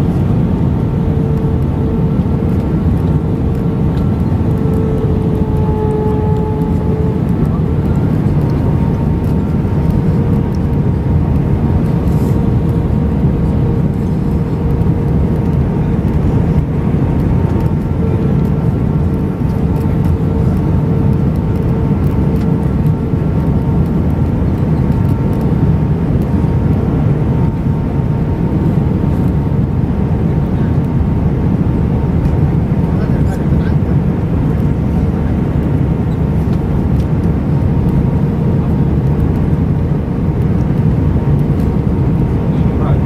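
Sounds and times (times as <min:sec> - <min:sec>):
airliner cabin engine rumble: 0:00.0 - 0:43.0
faint whining tones: 0:01.1 - 0:09.9.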